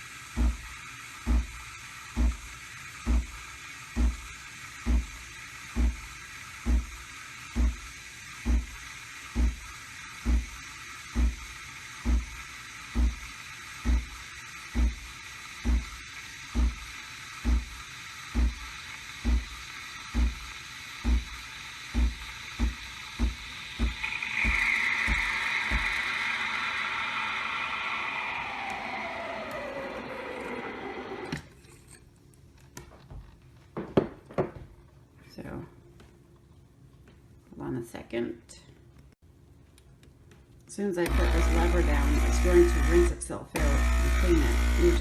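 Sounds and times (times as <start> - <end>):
coffee machine hiss: 0.0 - 31.4, 41.0 - 45.0
coffee machine thumping: 0.4 - 0.6, 1.3 - 1.6, 2.2 - 2.4, 4.0 - 4.2, 5.8 - 6.0, 6.7 - 6.9, 8.5 - 8.7, 10.3 - 10.5, 12.0 - 12.3, 13.0 - 13.2, 13.8 - 14.2, 15.6 - 15.9, 16.6 - 16.8, 18.4 - 18.6, 19.2 - 19.6, 20.2 - 20.4, 21.0 - 21.4, 22.0 - 26.1.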